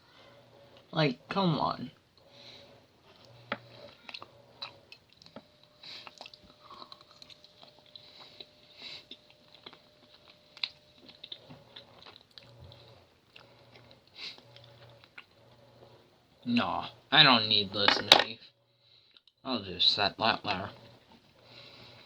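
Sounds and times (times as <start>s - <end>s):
person chewing food: 2.2s - 15.6s, 19.0s - 19.4s.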